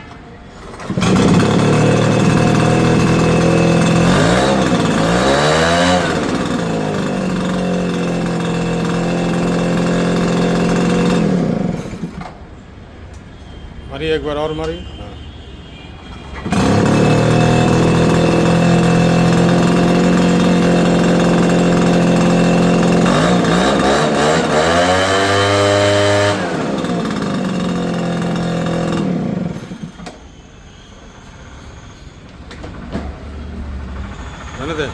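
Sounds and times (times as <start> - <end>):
leaf blower engine running: 0.8 - 12.4, 16.4 - 30.1.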